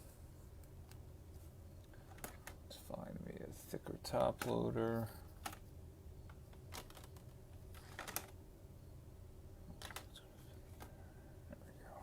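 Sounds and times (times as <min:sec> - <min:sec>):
plastic clicks and rustles: 0:01.8 - 0:02.6, 0:06.3 - 0:08.4, 0:09.7 - 0:10.9.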